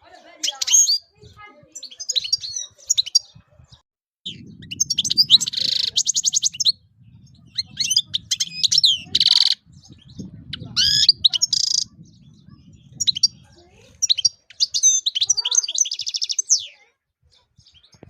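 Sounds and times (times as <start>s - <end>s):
goldfinch singing: 0.1s - 18.0s.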